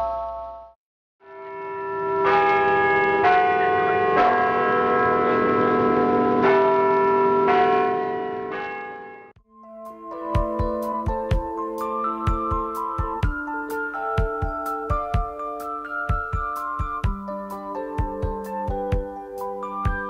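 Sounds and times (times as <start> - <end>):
church bells ringing: 1.3 - 9.4.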